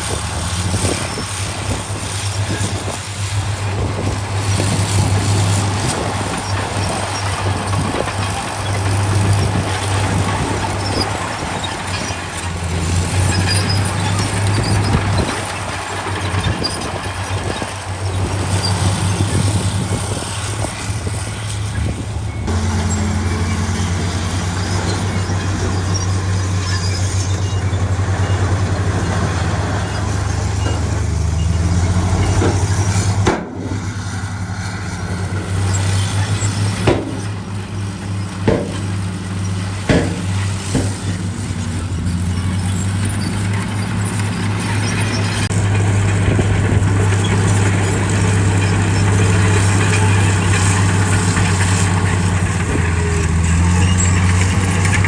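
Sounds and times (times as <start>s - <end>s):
diesel construction machinery running: 0.0s - 55.0s
sharp metallic clanks: 29.0s - 34.2s, 35.2s - 42.6s.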